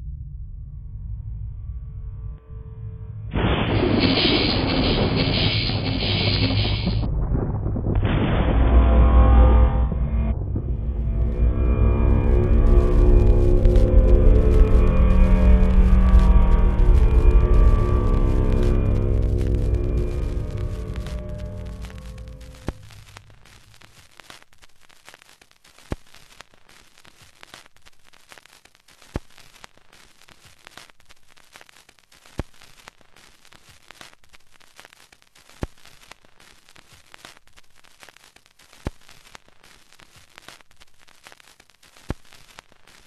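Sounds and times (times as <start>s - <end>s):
crackling static: 3.3s - 43.0s
sharp pop: 21.1s - 22.9s.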